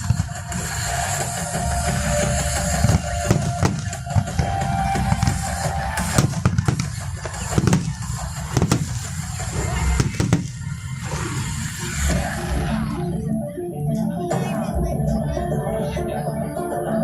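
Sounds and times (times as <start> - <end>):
fireworks bangs: 0.0 - 11.1.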